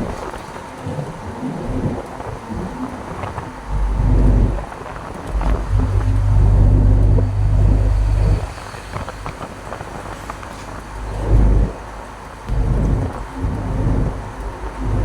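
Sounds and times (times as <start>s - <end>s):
truck engine rumble: 3.5s - 15.0s.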